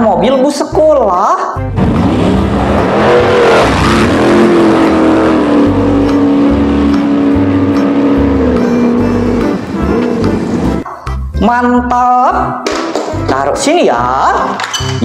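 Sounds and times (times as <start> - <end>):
vehicle engine running: 1.8 - 10.8.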